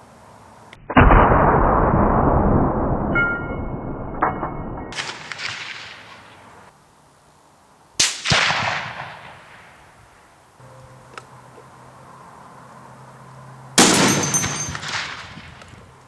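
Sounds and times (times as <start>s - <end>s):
bullet crack: 4.9s - 6.5s, 8.0s - 9.7s, 13.8s - 15.9s
distant rifle report echoing: 13.8s - 16.0s.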